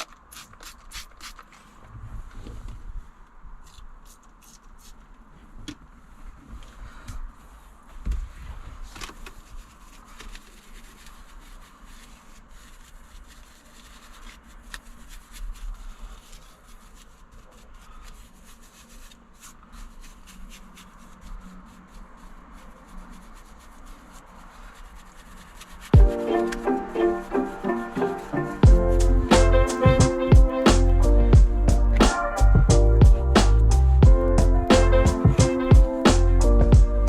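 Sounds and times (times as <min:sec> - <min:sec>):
upholstery being rubbed: 0:07.3 - 0:33.7.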